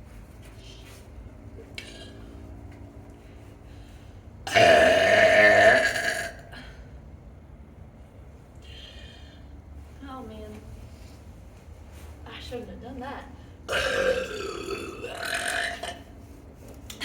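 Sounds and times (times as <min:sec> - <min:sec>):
loud drawn-out burp: 0:04.5 - 0:06.6, 0:13.7 - 0:16.0.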